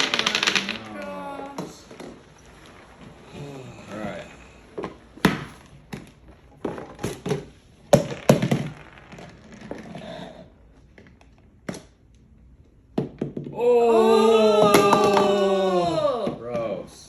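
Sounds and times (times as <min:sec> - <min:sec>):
crackling: 0:00.0 - 0:12.8.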